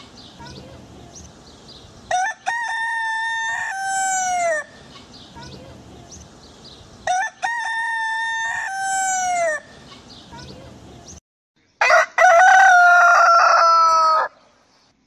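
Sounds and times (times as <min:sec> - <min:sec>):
rooster crowing: 0:02.1 - 0:04.8, 0:07.1 - 0:09.7, 0:11.8 - 0:14.4.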